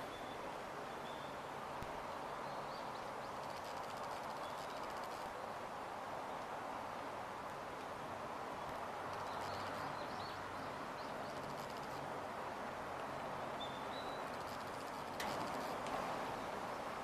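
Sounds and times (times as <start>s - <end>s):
steady background noise: 0.0s - 17.0s.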